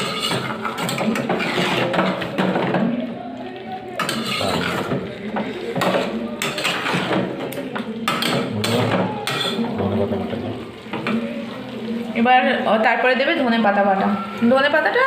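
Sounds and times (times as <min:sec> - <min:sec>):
metal spoon scraping cooking pot: 0:00.0 - 0:02.2, 0:04.0 - 0:04.9.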